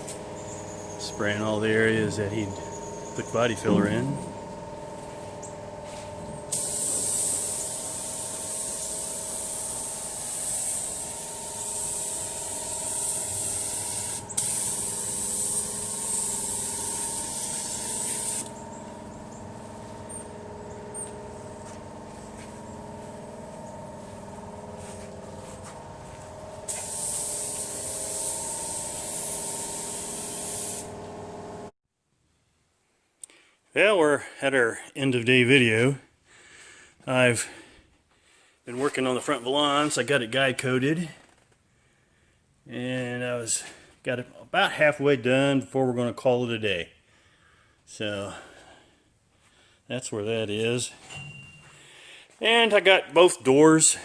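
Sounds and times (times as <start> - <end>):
faint hum: 0.4 - 6.6
paint spray gun hissing: 1.9 - 31.1.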